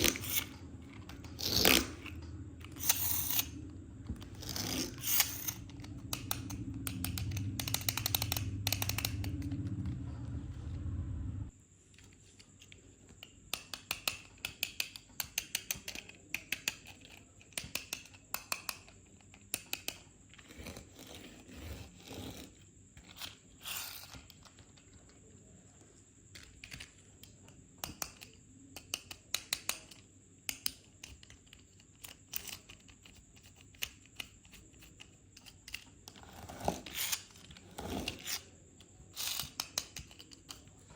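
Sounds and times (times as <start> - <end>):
low steady hum: 0.0 - 11.6
toy cars and plastic packaging clicking: 12.0 - 20.1, 26.3 - 40.9.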